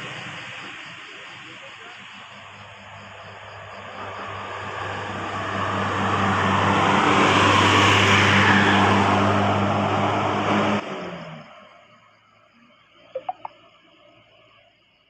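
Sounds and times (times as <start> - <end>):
vehicle passing by: 3.4 - 11.4.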